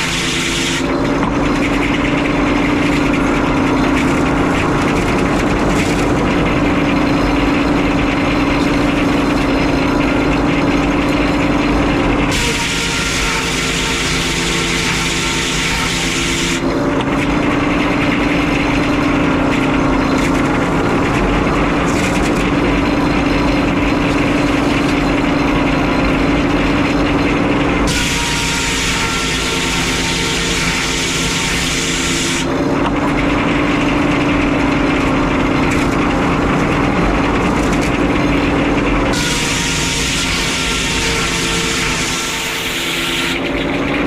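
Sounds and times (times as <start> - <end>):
saw blade hissing through log: 0.0 - 0.9, 12.3 - 16.6, 27.9 - 32.5, 39.1 - 43.4
circular sawmill humming: 0.0 - 44.0.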